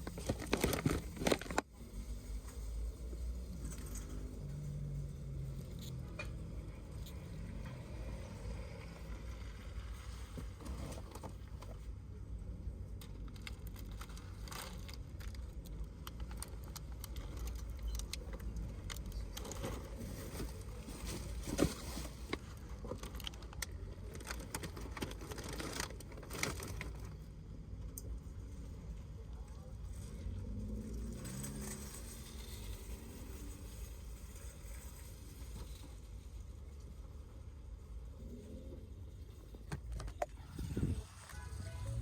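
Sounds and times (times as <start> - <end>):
steady low rumble: 36.4 - 42.0.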